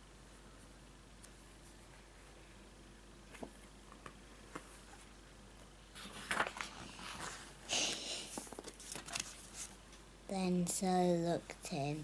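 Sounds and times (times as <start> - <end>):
rustling and handling noises: 3.2 - 10.1.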